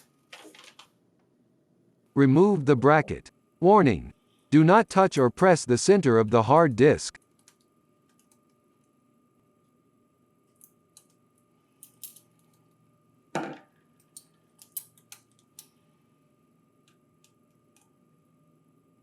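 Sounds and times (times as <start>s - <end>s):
small parts clicking and tapping: 11.8s - 12.6s, 14.0s - 15.8s.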